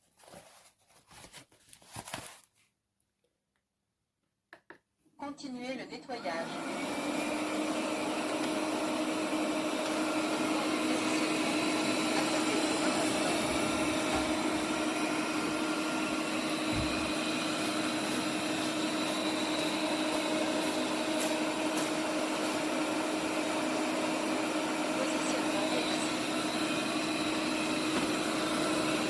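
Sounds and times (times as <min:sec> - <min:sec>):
robot vacuum motor hum: 0:06.2 - 0:29.0.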